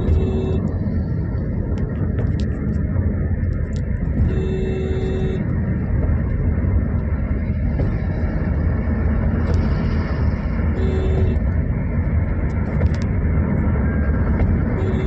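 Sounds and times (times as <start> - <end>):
vehicle horn: 0.0 - 0.8, 4.2 - 5.5, 10.7 - 11.4, 14.7 - 15.0.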